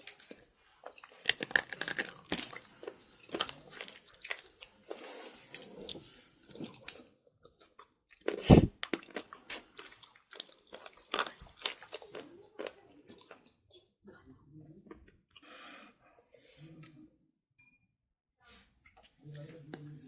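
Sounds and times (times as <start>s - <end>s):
crunchy chewing: 0.1s - 13.6s.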